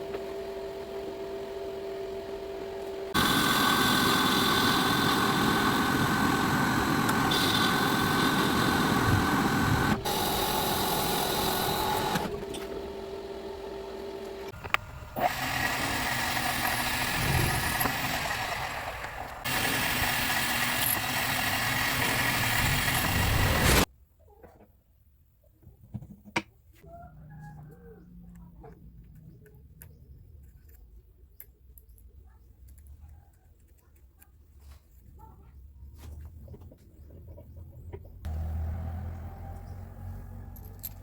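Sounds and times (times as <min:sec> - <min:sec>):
electric motor whining: 0:00.0 - 0:23.9.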